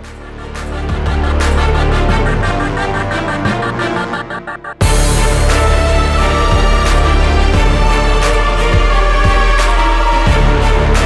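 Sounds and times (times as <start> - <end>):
instrumental music with heavy beat: 0.0 - 11.0
cymbal crash: 4.8 - 11.0.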